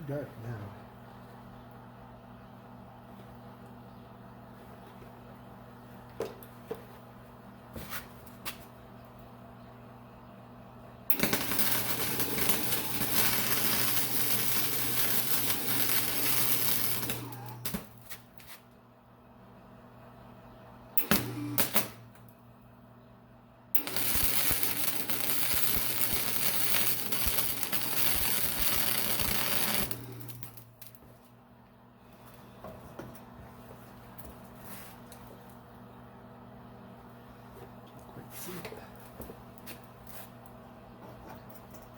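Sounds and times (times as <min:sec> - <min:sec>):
welder transformer humming: 0:00.0 - 0:41.9
welding arc crackling: 0:11.1 - 0:18.2, 0:21.0 - 0:22.2, 0:23.8 - 0:31.1.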